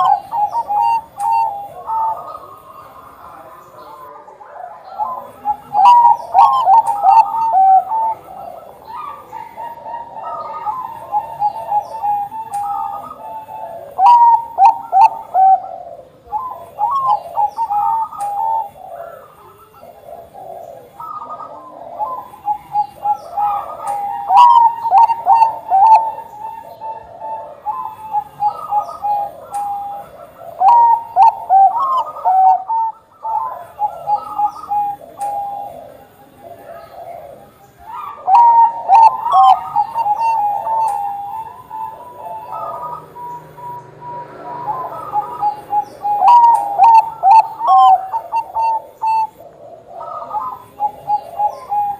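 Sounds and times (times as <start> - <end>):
doves cooing: 0.0 - 51.9.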